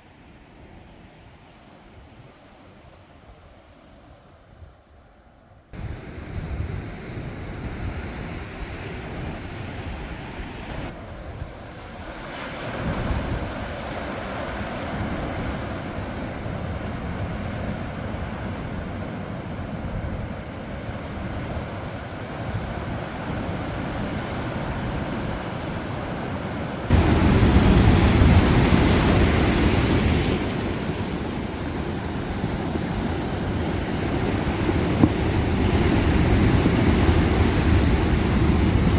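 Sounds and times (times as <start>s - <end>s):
ocean waves breaking on shore: 5.8s - 38.9s
wind on microphone: 22.5s - 38.9s.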